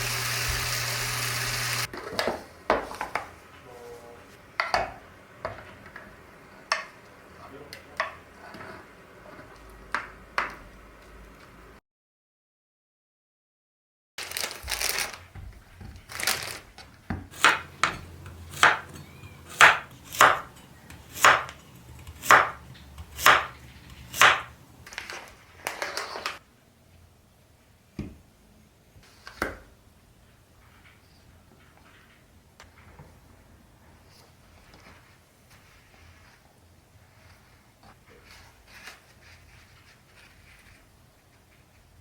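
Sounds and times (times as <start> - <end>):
knife chopping on cutting board: 17.1 - 24.8.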